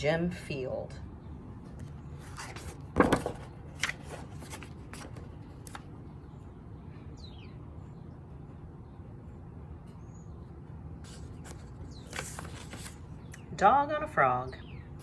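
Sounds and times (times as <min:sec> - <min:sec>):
book pages turning with clicks: 0:01.7 - 0:05.9, 0:11.1 - 0:13.4
paper rustling: 0:01.7 - 0:05.9, 0:11.0 - 0:13.2.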